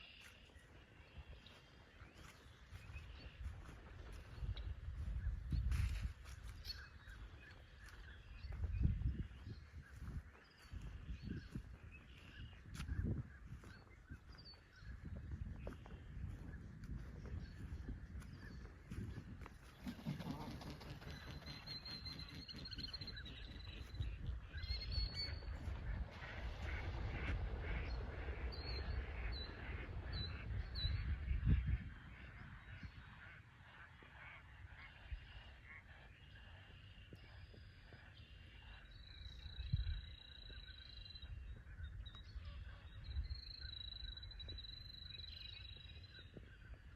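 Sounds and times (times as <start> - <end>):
wind rumbling on microphone: 0.0 - 46.9.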